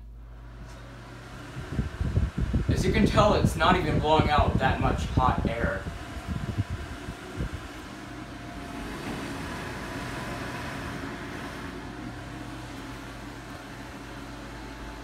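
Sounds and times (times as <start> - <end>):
exhaust fan humming: 0.0 - 15.0.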